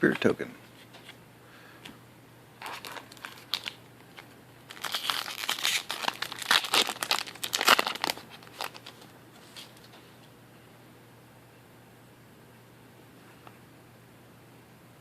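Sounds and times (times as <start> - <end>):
foil wrapper crinkling: 2.6 - 9.6.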